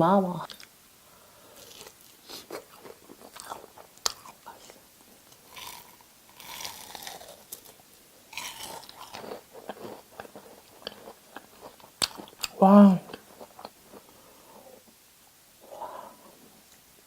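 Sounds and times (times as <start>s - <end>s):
crunchy chewing: 1.4s - 14.7s.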